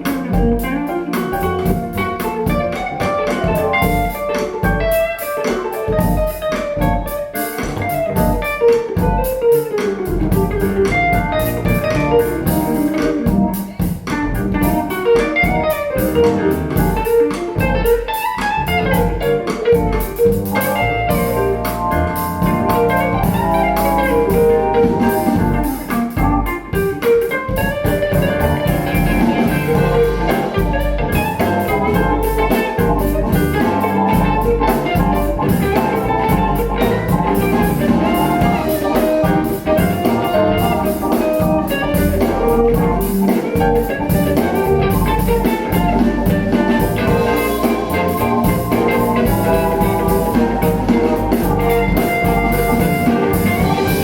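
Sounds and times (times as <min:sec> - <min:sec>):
instrumental music with drums and bass: 0:00.0 - 0:54.0.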